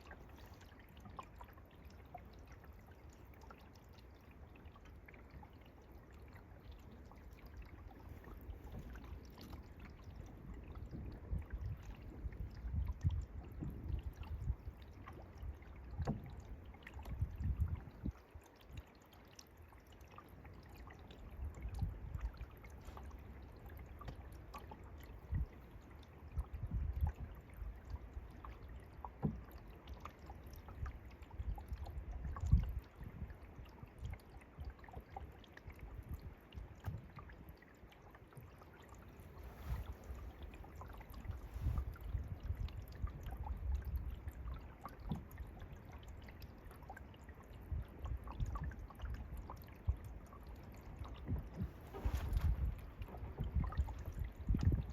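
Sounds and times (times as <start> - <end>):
paddle splashing in water: 4.4 - 18.8, 19.6 - 26.6, 36.6 - 54.9
wind rumbling on microphone: 4.7 - 18.8, 20.5 - 37.6, 38.4 - 54.9.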